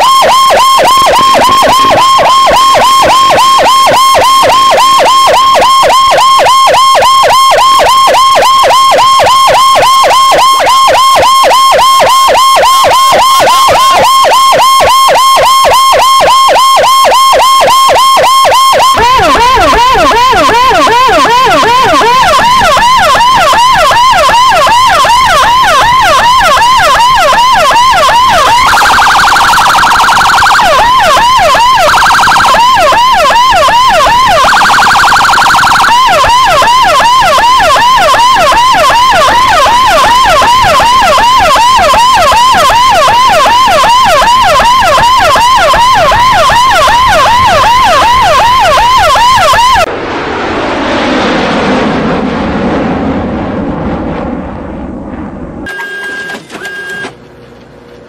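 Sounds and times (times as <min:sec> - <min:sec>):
siren yelping: 0:00.0 - 0:49.9, 0:55.7 - 0:57.1
steady horn tone: 0:18.9 - 0:23.1
low rumble: 0:49.9 - 0:55.7.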